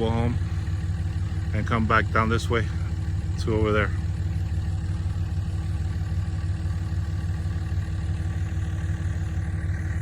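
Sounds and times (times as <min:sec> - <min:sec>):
vehicle engine running: 0:00.0 - 0:10.0.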